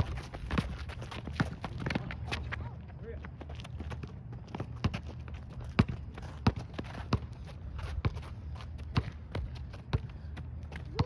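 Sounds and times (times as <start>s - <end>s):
basketball bouncing on hard court: 3.8s - 7.4s.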